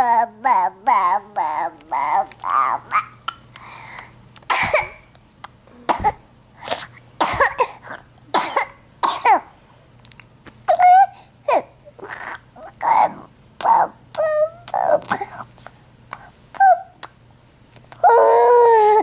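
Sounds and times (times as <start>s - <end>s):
boy fake-coughing: 4.5s - 5.0s, 5.8s - 6.2s, 7.2s - 9.5s.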